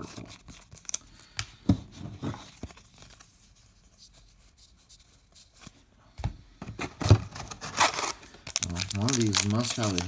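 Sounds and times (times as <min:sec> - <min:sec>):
cards being flipped through: 0:07.8 - 0:10.0.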